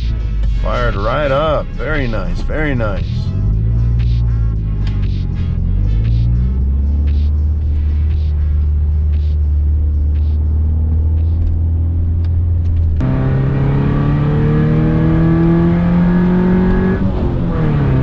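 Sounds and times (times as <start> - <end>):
car engine accelerating: 0.0 - 18.0
car engine droning: 0.0 - 18.0.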